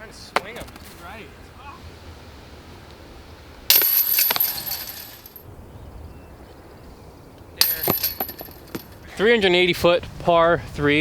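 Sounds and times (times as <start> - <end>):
disc golf basket chains jangling: 3.7 - 5.4, 7.6 - 9.2.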